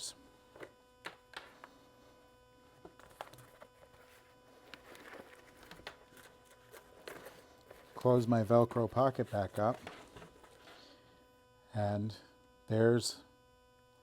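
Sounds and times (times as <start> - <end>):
faint steady hum: 0.0 - 14.0
soft cable rustle: 0.4 - 11.0.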